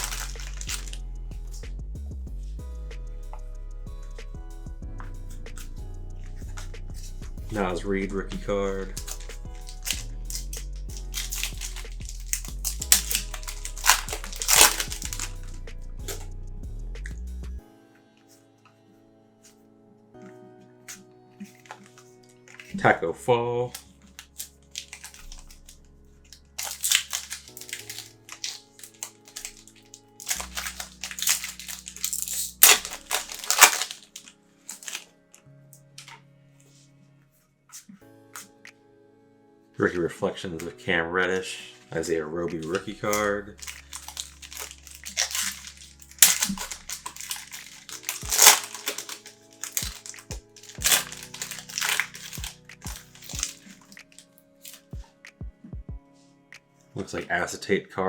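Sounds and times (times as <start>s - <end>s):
plastic wrapper crinkling: 0.0s - 1.7s, 8.8s - 16.3s, 23.7s - 35.2s, 42.6s - 55.0s
background music with low bass: 0.0s - 58.0s.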